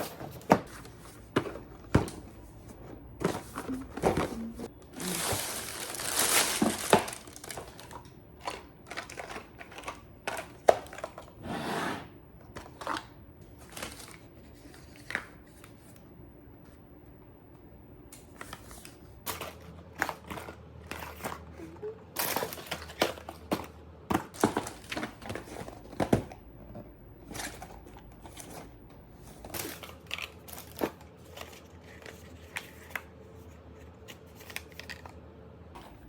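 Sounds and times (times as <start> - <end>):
crinkling: 3.3 - 11.2.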